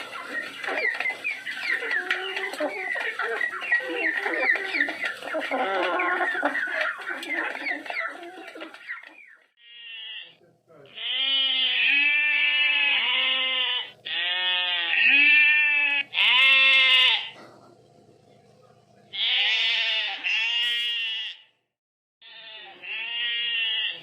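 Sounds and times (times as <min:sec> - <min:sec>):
sheep bleating: 0:09.6 - 0:17.4, 0:19.1 - 0:21.5, 0:22.2 - 0:24.0.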